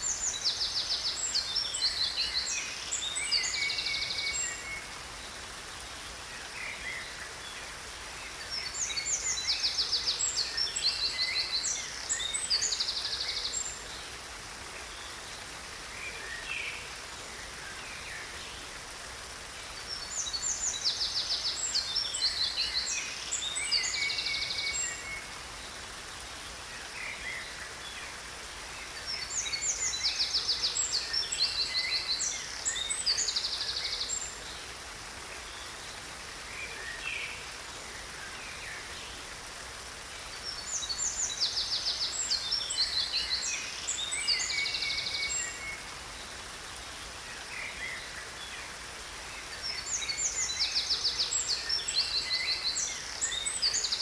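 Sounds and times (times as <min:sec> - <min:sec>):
songbird trills and chirps: 0:00.0 - 0:14.2, 0:19.7 - 0:28.2, 0:28.8 - 0:34.8, 0:40.2 - 0:54.0
waterfall hiss: 0:00.0 - 0:54.0.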